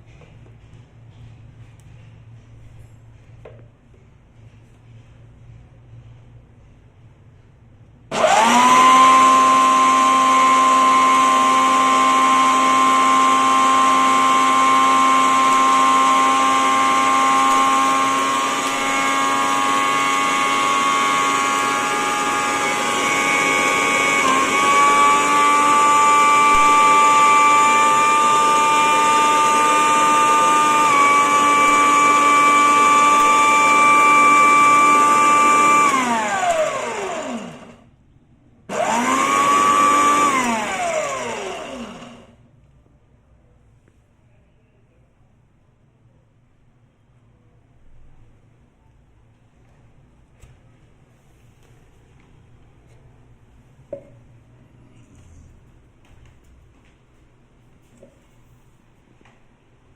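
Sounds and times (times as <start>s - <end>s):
mixer grinder motor whining: 8.1s - 37.9s, 38.7s - 42.4s.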